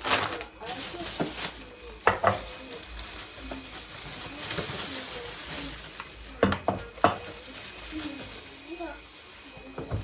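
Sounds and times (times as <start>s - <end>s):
utensil knocking on dish: 2.0s - 2.5s, 6.4s - 7.3s.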